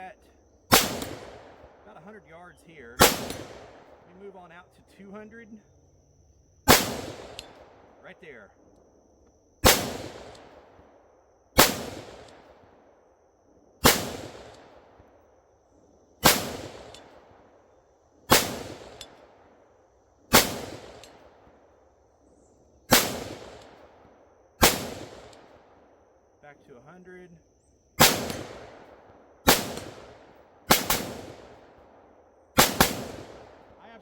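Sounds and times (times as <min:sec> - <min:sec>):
rifle shots echoing: 0:00.7 - 0:01.9, 0:03.0 - 0:04.3, 0:06.7 - 0:08.0, 0:09.6 - 0:10.8, 0:11.6 - 0:12.7, 0:13.8 - 0:15.0, 0:16.2 - 0:17.5, 0:18.3 - 0:19.5, 0:20.3 - 0:21.6, 0:22.9 - 0:24.0, 0:24.6 - 0:25.8, 0:28.0 - 0:34.0.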